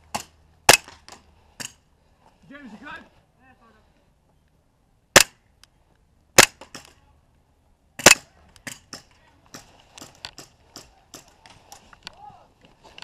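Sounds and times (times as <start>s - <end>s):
airsoft pistol shots: 5.2s - 5.4s, 6.4s - 6.8s.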